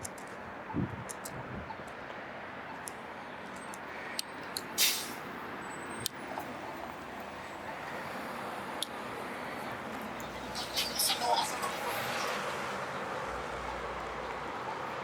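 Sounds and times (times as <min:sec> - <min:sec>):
wind noise: 0:00.0 - 0:01.9
street traffic: 0:00.0 - 0:15.0
short sharp hiss: 0:04.8 - 0:05.2.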